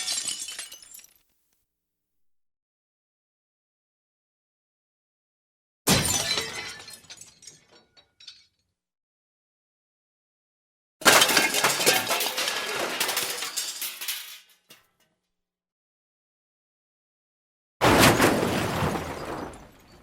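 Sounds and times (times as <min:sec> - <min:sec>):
glass smashing: 0:00.0 - 0:01.2, 0:05.9 - 0:08.6, 0:11.0 - 0:14.8, 0:17.8 - 0:20.0.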